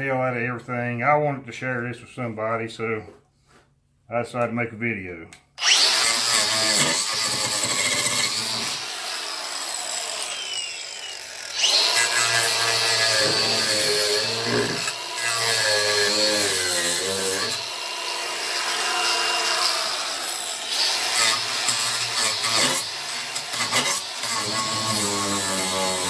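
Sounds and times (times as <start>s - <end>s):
angle grinder cutting wood: 5.6s - 26.0s.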